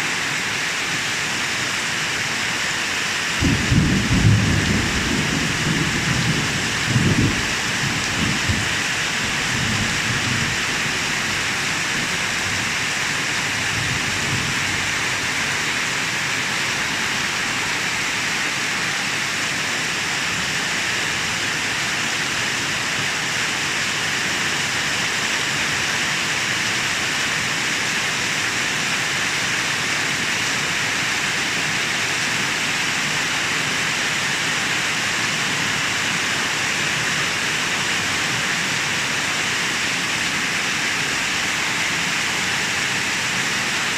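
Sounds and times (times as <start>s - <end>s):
heavy rain: 0.0s - 43.9s
thunder rumble: 3.4s - 8.9s.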